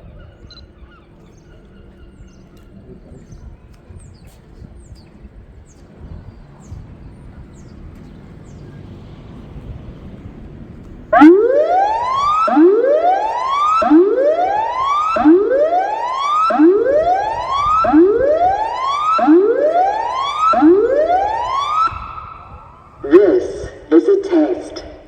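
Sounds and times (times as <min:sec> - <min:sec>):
warning sirens whooping: 0:06.0 - 0:25.0.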